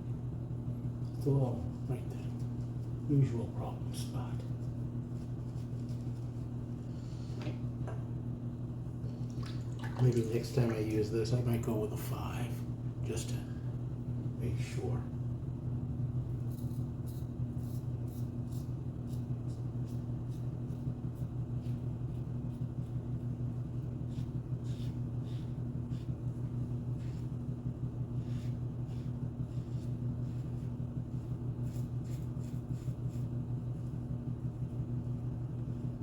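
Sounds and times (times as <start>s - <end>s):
steady low hum: 0.0s - 36.0s
razor cutting stubble: 23.8s - 33.4s.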